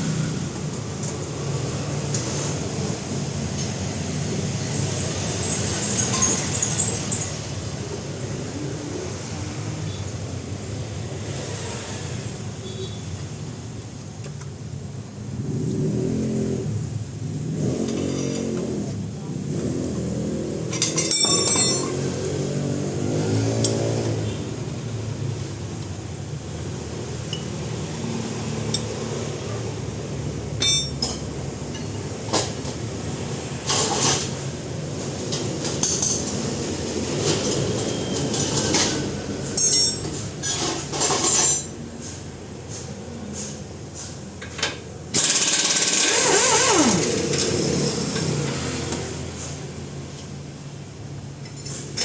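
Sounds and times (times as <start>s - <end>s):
metal clanks and knocks: 20.7s - 22.1s
power tool harsh burst: 45.2s - 47.3s.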